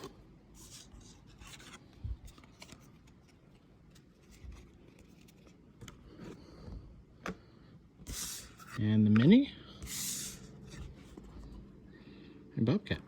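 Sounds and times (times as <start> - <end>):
cards rustling and scraping: 0.0 - 6.7, 8.0 - 11.7.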